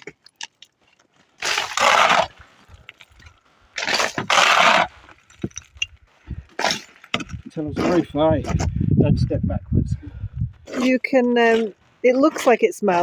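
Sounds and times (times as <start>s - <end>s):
small gritty clicks: 0.0s - 1.8s
shovel scraping through rubble: 0.0s - 8.1s.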